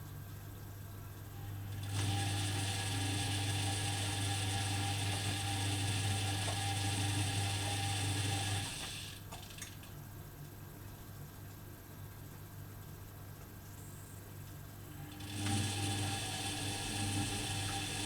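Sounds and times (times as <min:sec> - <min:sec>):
washing machine motor humming: 0:00.0 - 0:09.6, 0:14.3 - 0:18.0.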